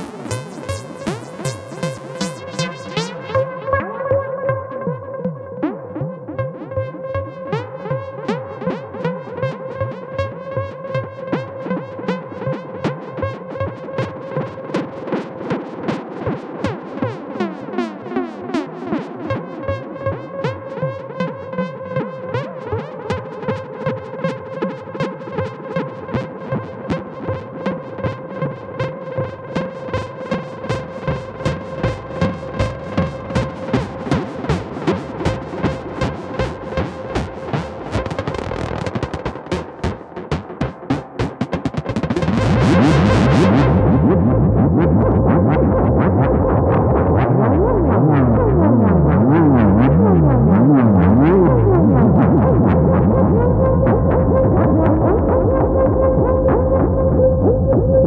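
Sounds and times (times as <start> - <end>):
pulsing synthesizer drone: 0.0 - 6.8, 29.4 - 58.0.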